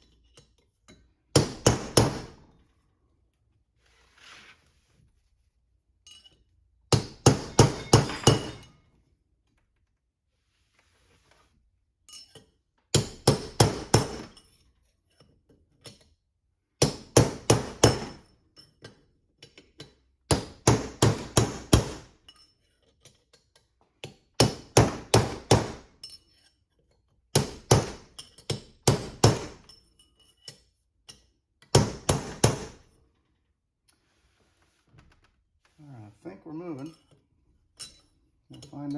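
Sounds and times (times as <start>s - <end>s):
hammer striking steel punch: 6.9s - 8.8s, 31.7s - 32.8s.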